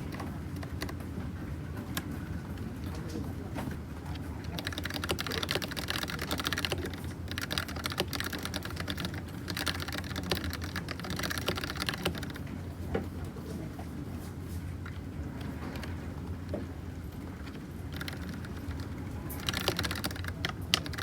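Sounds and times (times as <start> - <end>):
mechanical keyboard key clacks: 4.5 - 12.4, 17.5 - 21.0.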